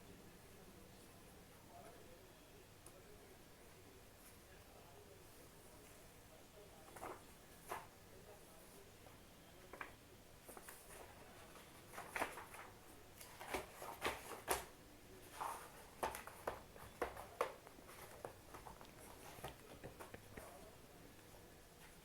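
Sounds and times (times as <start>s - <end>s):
soft taps and rustles: 9.6s - 20.7s.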